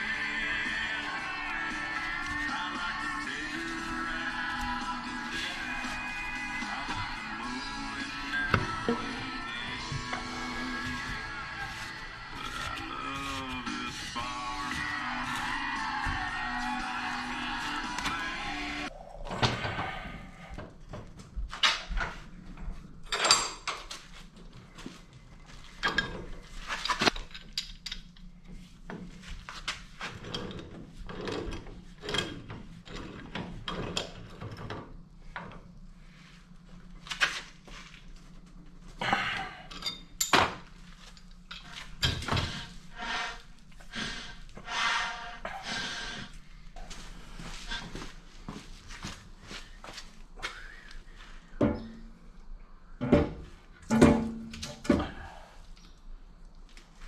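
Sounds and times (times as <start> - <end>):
metal tools clinking and clattering: 23.1 - 23.9, 39.7 - 40.4
steady low hum: 23.9 - 53.8.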